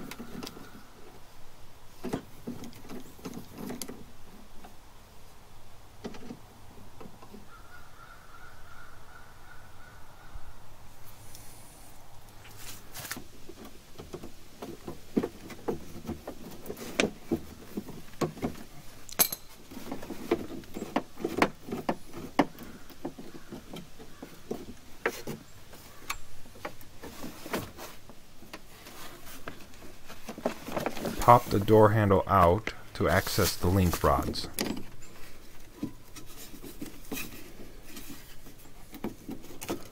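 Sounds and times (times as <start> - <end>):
socket wrench metallic clinks: 19.2 - 19.5.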